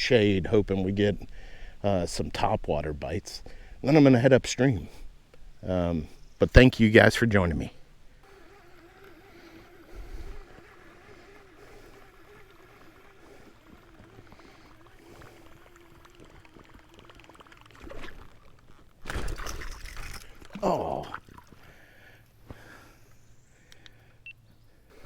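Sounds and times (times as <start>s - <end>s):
quiet water sounds: 0.0s - 25.0s
faint wavering hum: 5.0s - 25.0s.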